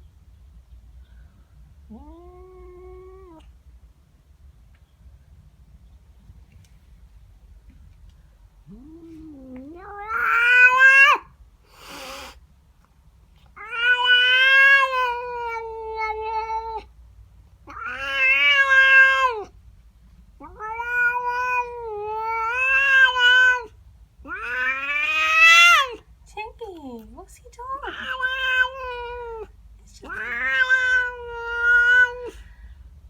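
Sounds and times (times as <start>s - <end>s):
cat yowling: 1.9s - 3.5s, 8.7s - 11.3s, 13.6s - 16.9s, 17.7s - 19.5s, 20.4s - 26.0s, 27.8s - 32.4s
cat hissing: 8.6s - 12.4s, 17.7s - 19.5s, 20.4s - 26.0s, 27.9s - 32.5s.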